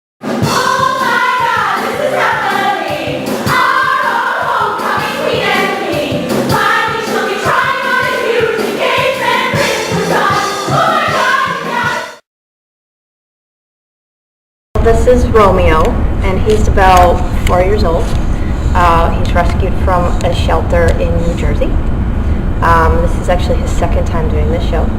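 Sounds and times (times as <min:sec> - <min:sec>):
accompaniment with regular beat: 0:00.2 - 0:12.2
group of voices singing: 0:00.4 - 0:12.2.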